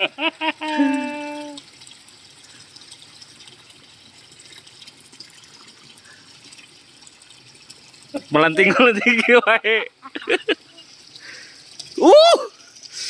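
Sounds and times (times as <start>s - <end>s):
running water trickling and splashing: 0.0s - 13.0s
person's held voice: 0.7s - 1.6s.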